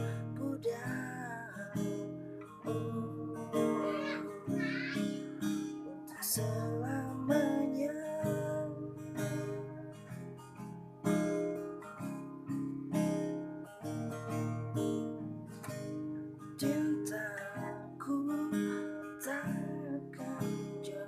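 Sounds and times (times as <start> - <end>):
person singing: 0.0 - 10.0, 16.6 - 21.0
acoustic guitar strumming: 0.0 - 21.0.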